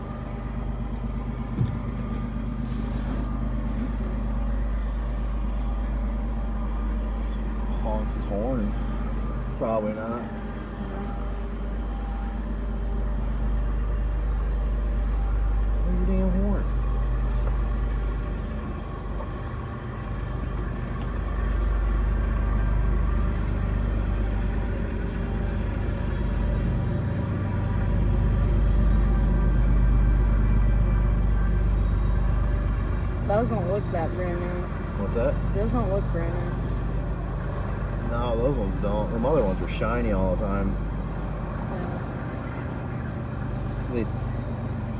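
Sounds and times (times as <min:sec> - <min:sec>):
low engine rumble: 0:00.0 - 0:44.9
brief thump: 0:01.6 - 0:04.0.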